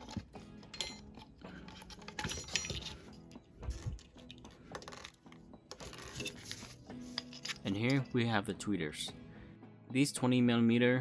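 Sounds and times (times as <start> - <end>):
small screws clinking: 0.0 - 8.1
soft background music: 0.0 - 11.0.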